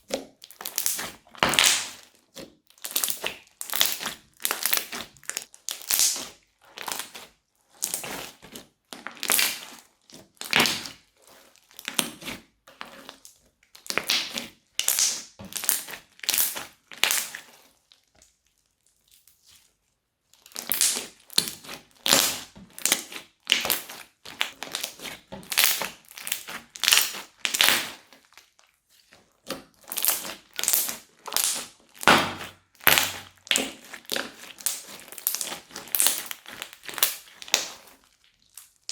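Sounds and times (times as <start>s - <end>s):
crunchy slime being squeezed: 0.4s - 9.8s, 13.7s - 17.6s, 20.4s - 28.4s, 29.7s - 38.9s.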